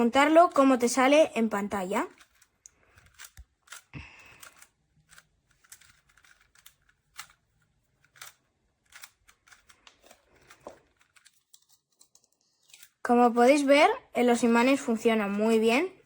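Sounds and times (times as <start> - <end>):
plastic puzzle cube clicking: 2.1 - 13.0.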